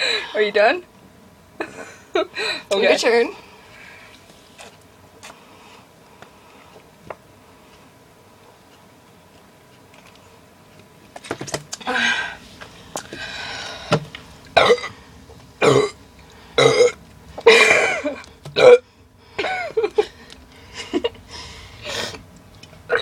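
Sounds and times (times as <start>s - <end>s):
girl burping: 14.6s - 14.9s, 15.6s - 16.0s, 16.6s - 18.8s.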